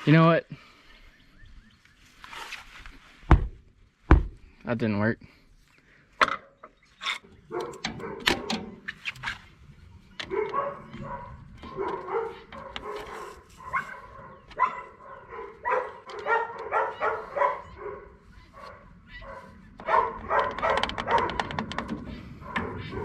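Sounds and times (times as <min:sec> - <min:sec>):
dogs barking: 0:07.4 - 0:08.9, 0:10.1 - 0:23.0
sharp clicks and knocks: 0:19.8 - 0:22.8.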